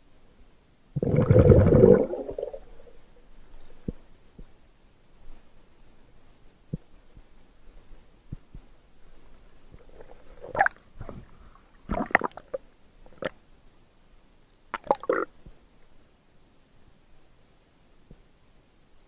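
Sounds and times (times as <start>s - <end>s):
muffled water gurgling: 1.0s - 2.8s
water splashing: 1.0s - 2.9s.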